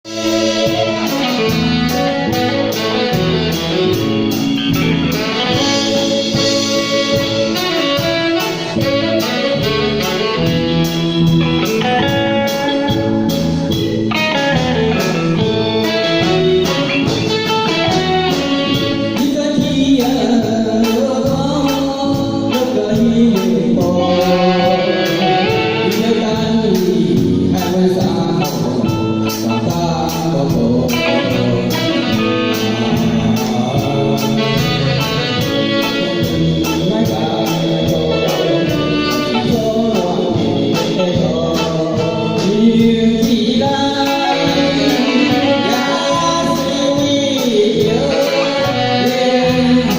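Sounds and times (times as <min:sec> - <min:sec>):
guitar: 0:00.0 - 0:49.9
person singing: 0:00.0 - 0:49.9
steady beat: 0:00.0 - 0:49.9.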